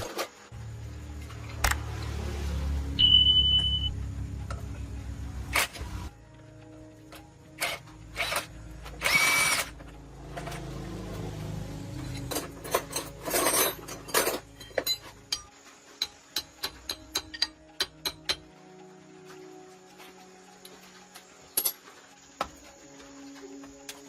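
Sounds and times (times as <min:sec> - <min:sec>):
metal scraping: 0:07.6 - 0:15.6
hand tools knocking on metal: 0:12.2 - 0:18.6.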